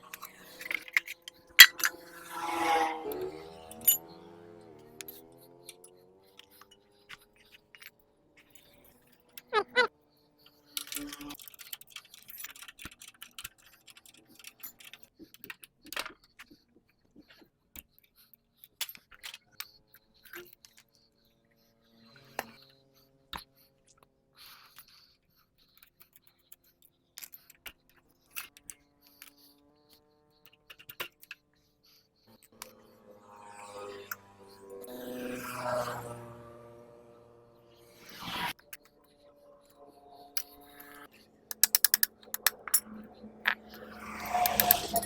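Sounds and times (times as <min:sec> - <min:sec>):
metallic clicks of hand tools: 0:00.1 - 0:04.1, 0:10.7 - 0:16.5, 0:41.5 - 0:45.0.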